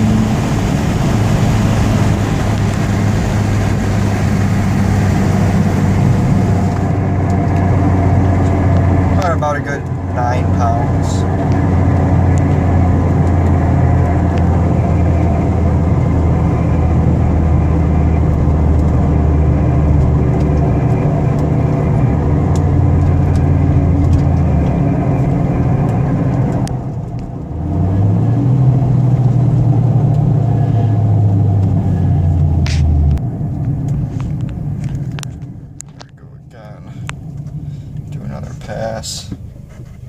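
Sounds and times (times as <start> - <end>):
car engine running: 0.0 - 40.0.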